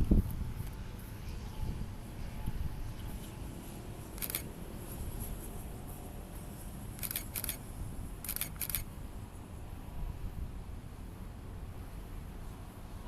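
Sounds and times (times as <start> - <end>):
low rumble of wind: 0.0 - 13.0
short sharp clicks: 7.0 - 7.6, 8.3 - 8.8.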